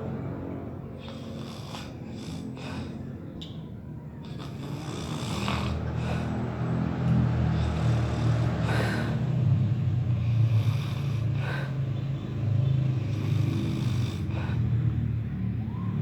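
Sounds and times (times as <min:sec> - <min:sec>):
person snoring heavily: 0:01.0 - 0:03.2, 0:04.2 - 0:12.0, 0:12.8 - 0:14.8.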